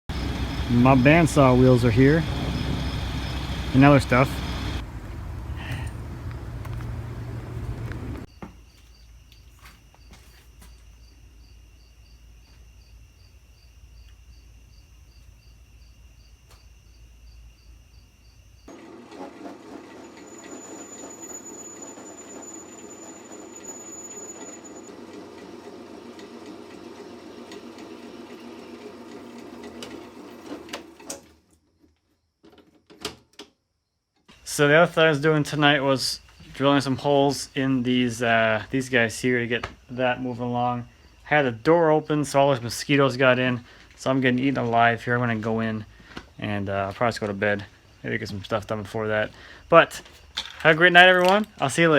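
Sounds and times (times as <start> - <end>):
steady whirring noise: 0.1 - 8.3
crickets chirping: 0.1 - 18.7, 20.3 - 25.0, 33.8 - 51.9.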